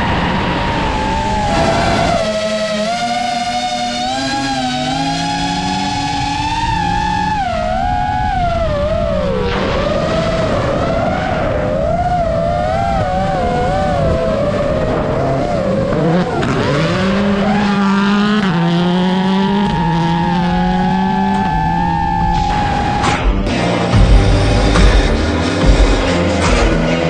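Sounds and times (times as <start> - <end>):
rally car engine: 0.0 - 27.0
low bass notes: 18.1 - 27.0.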